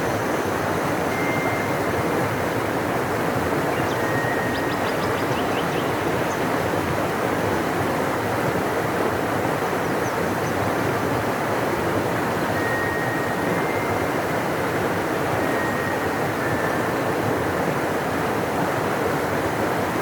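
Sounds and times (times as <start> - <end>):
faint high bird chirps: 3.7 - 6.4.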